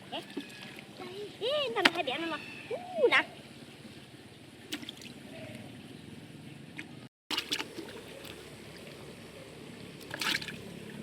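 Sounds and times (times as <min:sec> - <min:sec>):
water sloshing and trickling: 0:00.0 - 0:11.0
small splashes: 0:04.6 - 0:05.3, 0:06.8 - 0:11.0.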